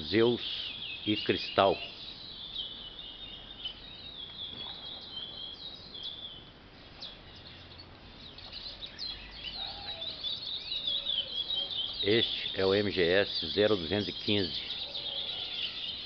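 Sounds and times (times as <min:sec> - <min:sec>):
bird singing whistled notes: 0:00.0 - 0:16.0.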